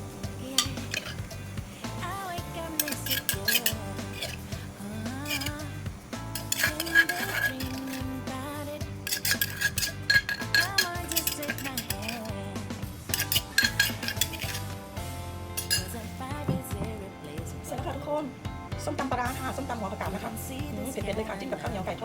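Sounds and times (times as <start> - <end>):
background music: 0.0 - 22.0
utensils clinking against a bowl: 0.4 - 14.8, 15.6 - 17.0.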